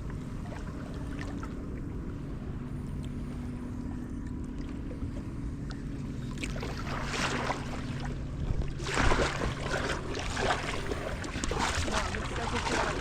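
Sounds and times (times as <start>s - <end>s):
steady low hum: 0.0s - 13.0s
water rushing: 6.4s - 13.0s.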